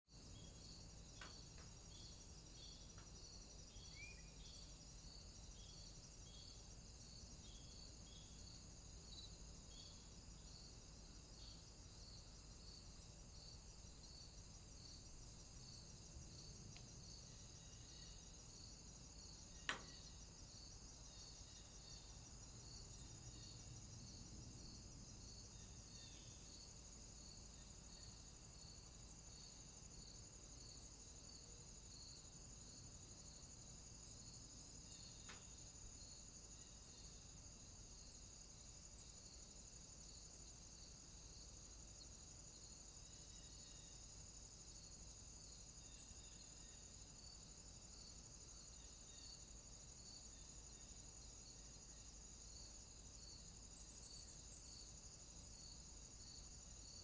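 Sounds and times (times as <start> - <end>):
insects trilling: 0.1 - 57.0
pulsing insect chirp: 0.1 - 57.0.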